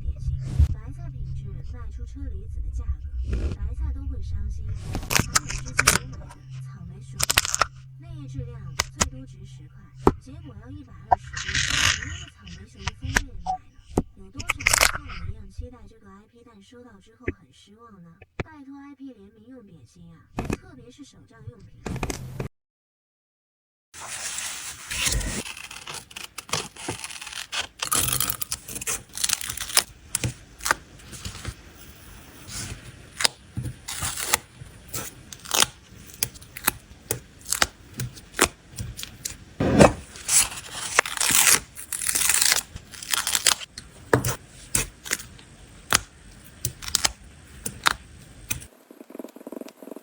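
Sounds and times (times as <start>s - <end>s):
paper and stickers handled: 4.9s - 15.8s, 24.0s - 50.0s.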